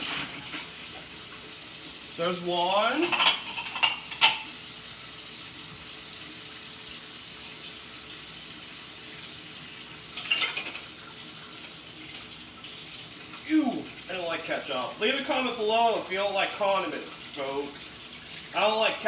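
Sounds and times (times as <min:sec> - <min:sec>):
dishes clattering: 0:00.0 - 0:00.8, 0:02.9 - 0:04.6, 0:10.1 - 0:10.9
faucet running: 0:00.0 - 0:19.0
dish clink: 0:02.9 - 0:04.6, 0:10.2 - 0:10.9.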